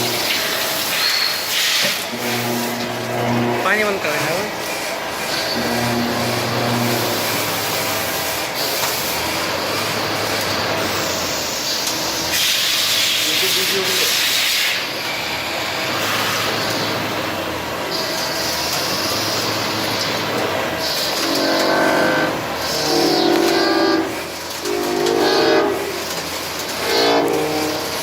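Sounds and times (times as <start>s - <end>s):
machine tool cutting metal: 17.8s - 28.0s.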